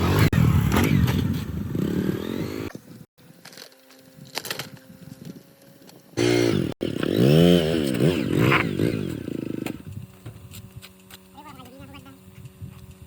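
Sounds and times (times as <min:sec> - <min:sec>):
small engine revving: 0:00.0 - 0:03.1, 0:03.7 - 0:13.0.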